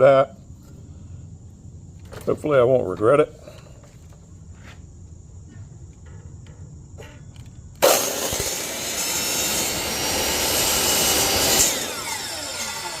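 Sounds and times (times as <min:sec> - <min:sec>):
miter saw cutting acrylic: 0:07.8 - 0:13.0
saw blade winding down: 0:07.8 - 0:13.0.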